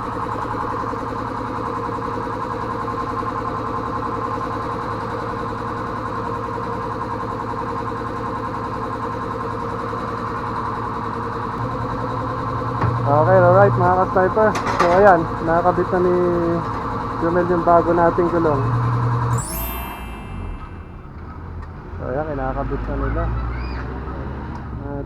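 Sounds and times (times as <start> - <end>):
machine humming: 11.6 - 17.2.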